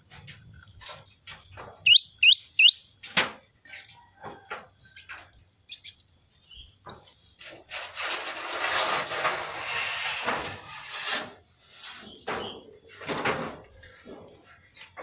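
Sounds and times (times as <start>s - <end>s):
songbird chirps: 0.8s - 3.1s, 4.8s - 7.5s, 11.8s - 13.0s.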